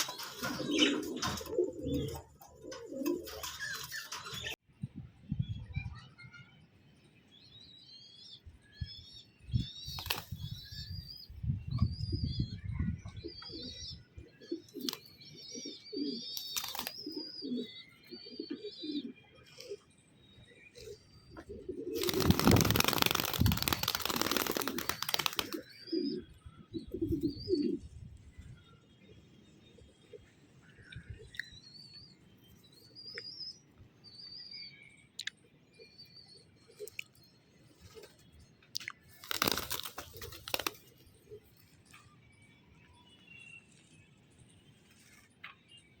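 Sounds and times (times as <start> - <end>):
small birds chirping: 5.2 - 46.0
wings flapping: 16.4 - 16.9, 22.0 - 25.6, 39.1 - 40.9.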